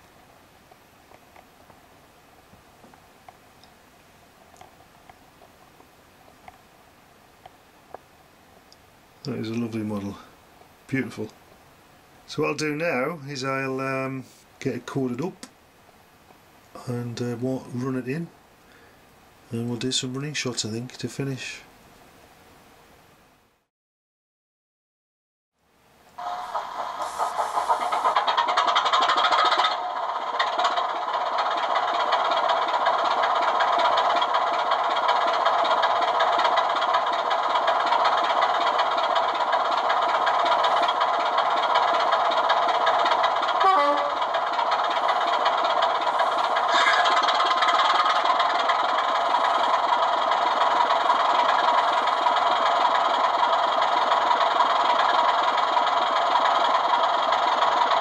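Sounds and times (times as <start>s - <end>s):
diesel engine through small speaker: 26.2s - 58.0s.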